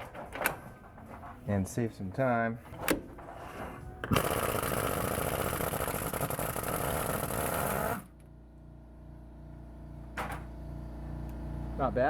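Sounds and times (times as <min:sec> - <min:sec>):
power tool spinning a bolt: 0:04.0 - 0:08.1.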